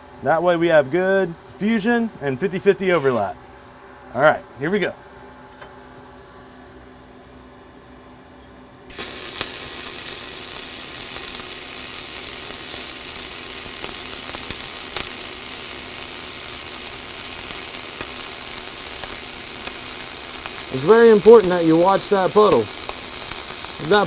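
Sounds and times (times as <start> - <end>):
welding arc crackling and sizzling: 3.0 - 3.3, 8.9 - 24.0.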